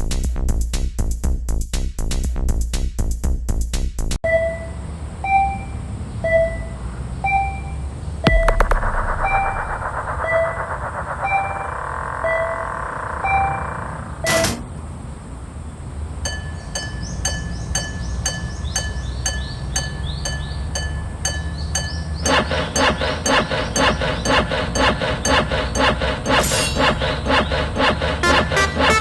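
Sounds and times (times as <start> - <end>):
sharp click: 8.3 - 13.6.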